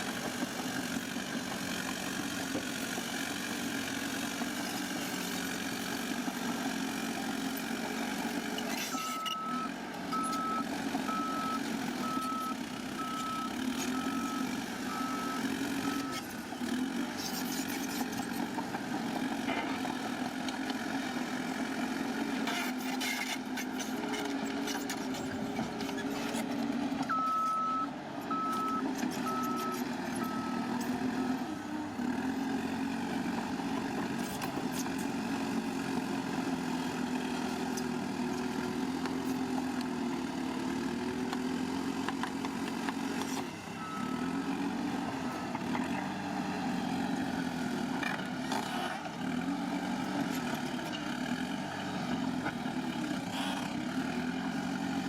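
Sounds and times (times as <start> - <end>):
bulldozer diesel engine running: 0.0 - 55.0
reversing alarm beeping: 27.1 - 30.7.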